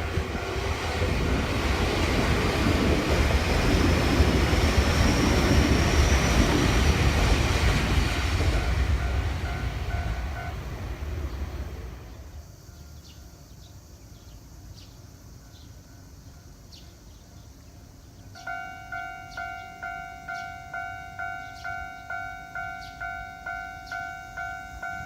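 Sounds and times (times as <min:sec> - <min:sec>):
crossing warning bell dinging: 0:00.0 - 0:11.1, 0:18.3 - 0:25.0
train rumbling: 0:00.0 - 0:25.0.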